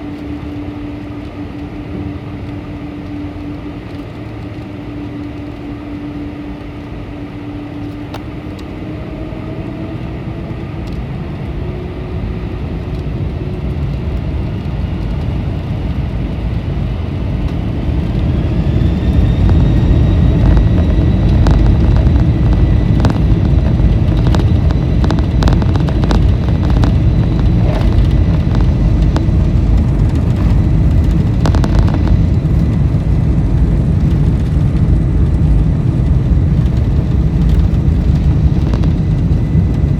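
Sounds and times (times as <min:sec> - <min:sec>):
jet engines spooling up: 0:11.5 - 0:39.9.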